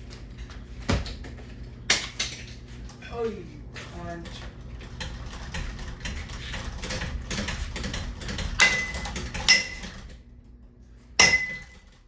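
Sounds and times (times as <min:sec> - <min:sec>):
ceiling fan rattling: 0:00.0 - 0:12.0.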